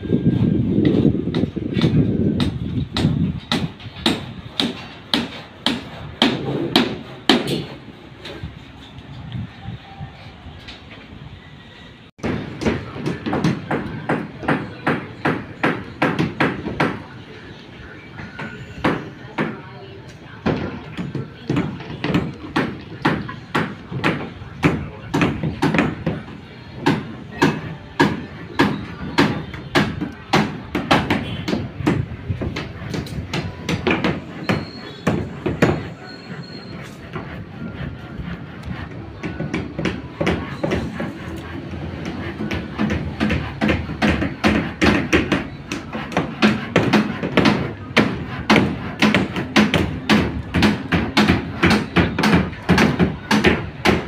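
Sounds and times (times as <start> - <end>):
hammer blows ringing: 20.5 - 37.8, 42.0 - 54.0.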